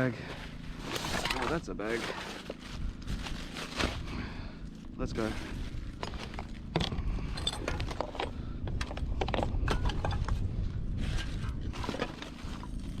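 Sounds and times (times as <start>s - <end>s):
steady low rumble: 0.0s - 13.0s
junk knocking and clattering: 5.9s - 10.6s.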